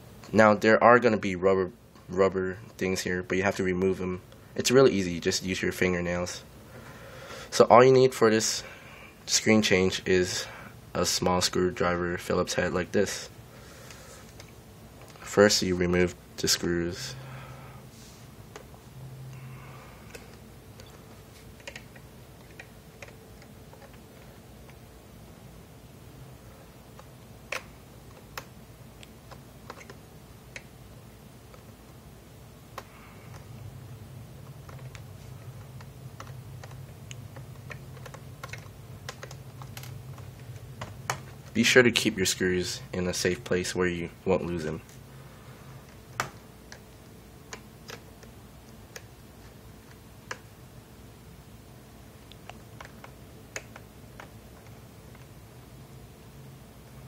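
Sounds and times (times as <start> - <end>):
steady low hum: 0.0 - 57.0.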